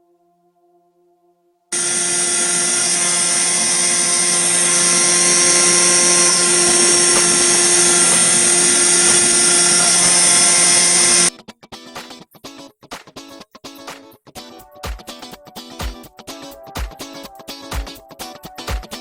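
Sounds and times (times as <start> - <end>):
router spindle high whine: 1.7 - 11.3
end mill cutting metal: 1.8 - 11.3.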